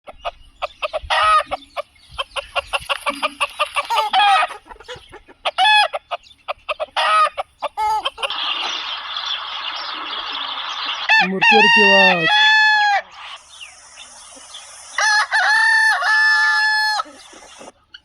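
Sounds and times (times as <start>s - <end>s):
chickens clucking and squawking: 0.1s - 18.0s
dense noisy chatter: 11.2s - 12.4s.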